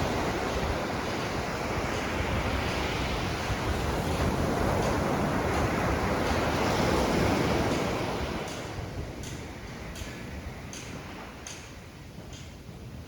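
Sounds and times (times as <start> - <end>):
ocean wave washing in: 0.0 - 11.8
wind buffeting microphone: 0.0 - 13.0.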